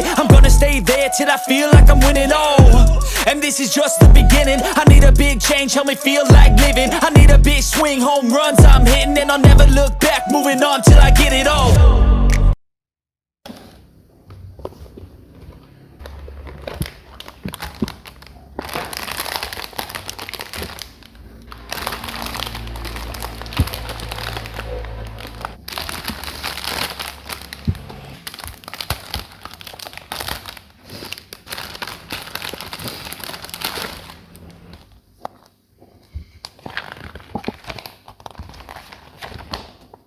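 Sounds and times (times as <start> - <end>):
plastic packaging crinkling: 13.5 - 40.0.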